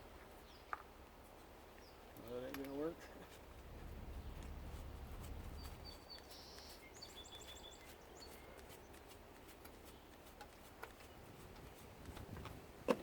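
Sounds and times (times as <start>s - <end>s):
small bird chirping: 3.9s - 9.2s.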